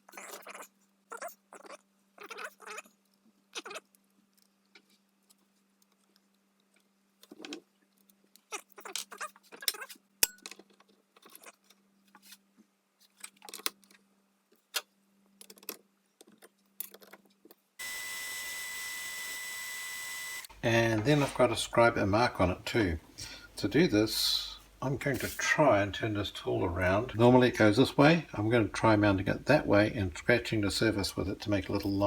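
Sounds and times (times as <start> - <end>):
steady hiss with high whine: 17.8 - 29.0
faint steady hum: 17.8 - 32.0.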